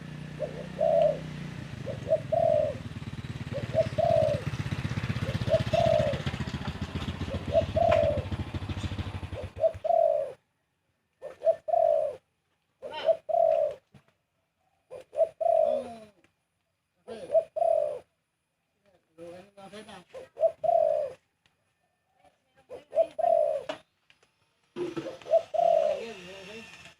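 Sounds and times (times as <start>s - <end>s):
dove cooing: 0.0s - 13.9s, 14.6s - 16.2s, 17.0s - 18.2s, 19.7s - 21.3s, 22.6s - 23.9s, 24.8s - 26.3s.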